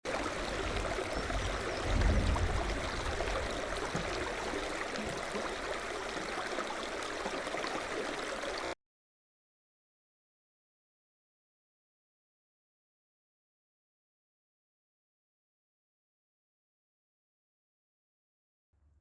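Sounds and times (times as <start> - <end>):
low rumble: 0.5 - 4.6.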